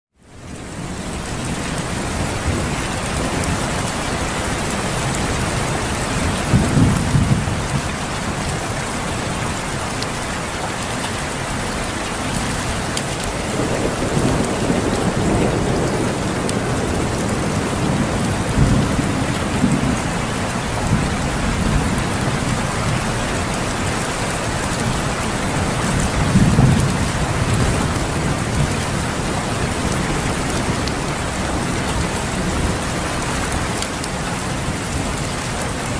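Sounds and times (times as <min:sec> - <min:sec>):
steady rain: 0:00.1 - 0:35.9
rolling thunder: 0:02.1 - 0:08.4, 0:13.3 - 0:23.0, 0:24.8 - 0:32.9.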